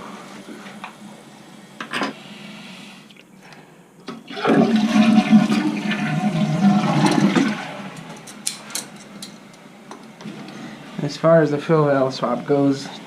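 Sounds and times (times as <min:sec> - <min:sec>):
toilet flushing: 0:04.1 - 0:08.4
toilet tank refilling: 0:04.1 - 0:08.4.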